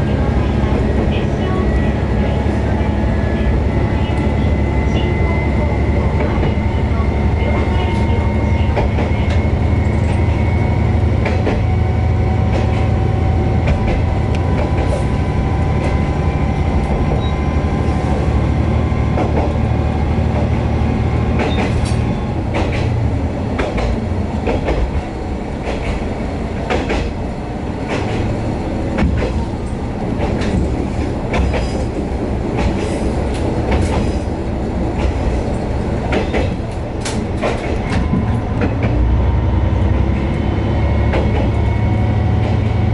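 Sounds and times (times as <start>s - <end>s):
diesel railcar engine drone: 0.0s - 42.9s
wheels clicking over rail joints: 13.6s - 15.1s, 21.3s - 27.2s, 27.8s - 39.0s.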